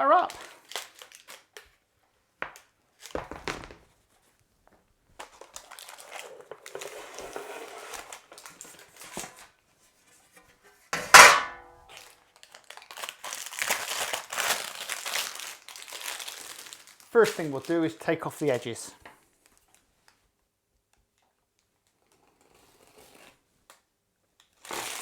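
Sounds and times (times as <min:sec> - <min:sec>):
baking paper crinkling: 0:05.3 - 0:07.3, 0:12.5 - 0:18.7
loud knock with metallic ring: 0:11.0 - 0:11.7.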